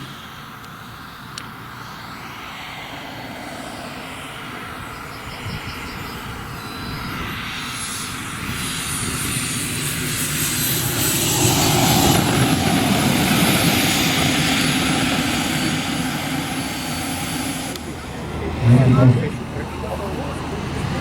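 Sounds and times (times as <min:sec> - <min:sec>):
model aircraft engine: 0:00.0 - 0:21.0
faint high whine: 0:15.8 - 0:21.0.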